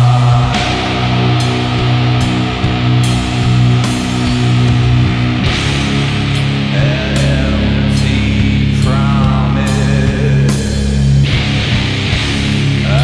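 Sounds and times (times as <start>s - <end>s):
cymbal crashes: 0.0s - 7.4s
bass holding low chords: 0.0s - 13.0s
distorted electric guitar chords: 0.0s - 13.0s
drums: 0.0s - 13.0s.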